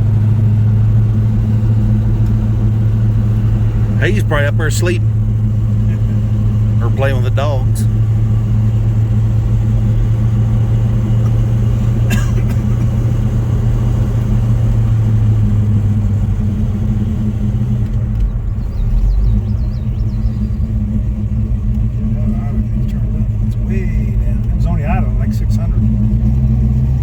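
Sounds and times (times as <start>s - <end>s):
car engine rumble while driving: 0.0s - 27.0s.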